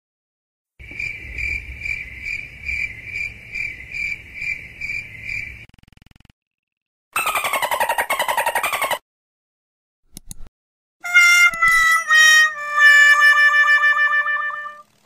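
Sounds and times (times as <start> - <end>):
crickets chirping: 0.8 - 5.7
falling pitch sound: 11.0 - 14.9.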